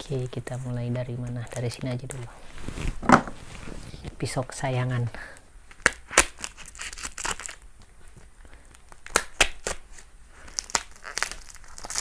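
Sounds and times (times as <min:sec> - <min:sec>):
packaging tearing and crinkling: 0:05.7 - 0:07.7, 0:08.7 - 0:12.0.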